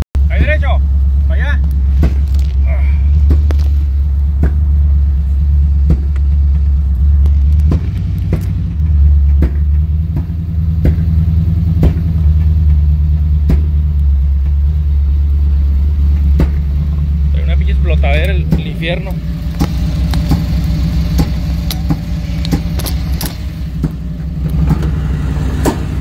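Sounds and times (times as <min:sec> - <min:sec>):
car engine idling rumble: 0:00.0 - 0:26.0
exhaust pops: 0:00.0 - 0:26.0.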